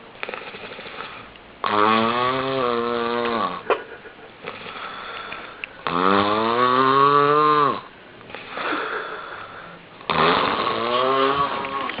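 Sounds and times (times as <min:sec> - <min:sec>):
person snoring: 0:00.3 - 0:03.6, 0:04.4 - 0:12.0
quiet breath: 0:04.5 - 0:05.8, 0:08.3 - 0:09.9.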